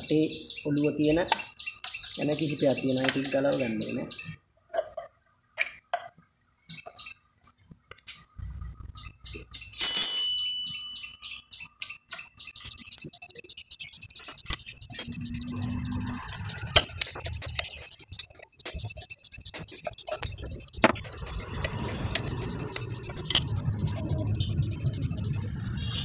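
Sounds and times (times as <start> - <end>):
bird chirping rapidly: 0.0 - 4.4, 8.7 - 26.0
hand tools clinking on metal: 9.5 - 11.2
loud ringing metallic clink: 9.5 - 11.2.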